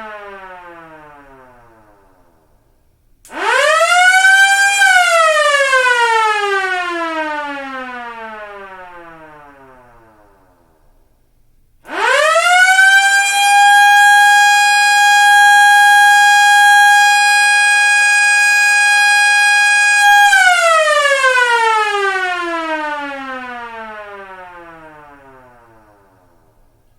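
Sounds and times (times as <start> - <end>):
rotor police siren wailing: 0.0 - 2.0, 3.3 - 10.4, 11.9 - 26.1.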